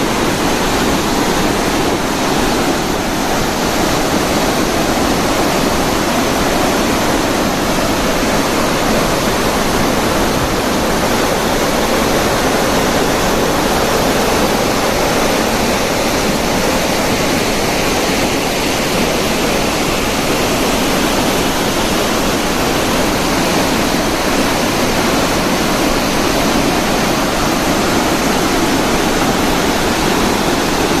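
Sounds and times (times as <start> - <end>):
water rushing through spillway: 0.0 - 31.0.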